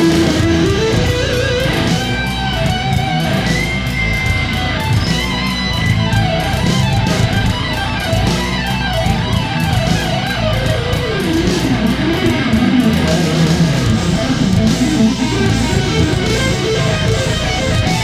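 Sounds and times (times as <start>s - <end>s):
electric guitar music: 0.0s - 18.0s.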